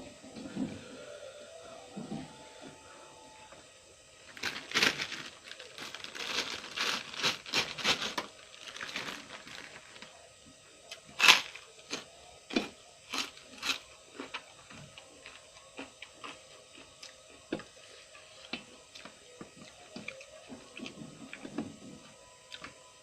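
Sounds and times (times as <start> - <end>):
crunching and chewing cucumber: 4.3 - 10.1, 10.9 - 17.7, 18.4 - 22.8.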